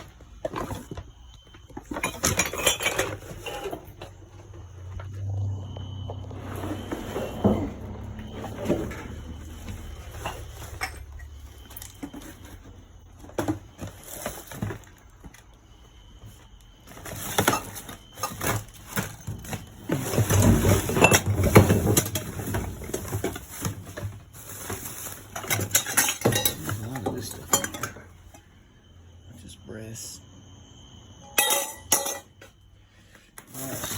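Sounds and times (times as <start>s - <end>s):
metal pots and pans clattering: 1.8s - 4.2s, 10.0s - 12.4s, 17.1s - 28.1s, 31.2s - 32.4s.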